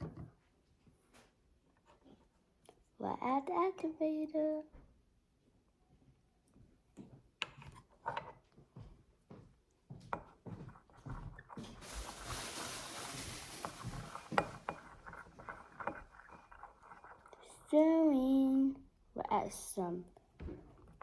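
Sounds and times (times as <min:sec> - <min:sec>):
light scrapes and clicks in bowl: 0:07.4 - 0:08.5, 0:10.1 - 0:18.3
steady hiss: 0:11.8 - 0:14.6.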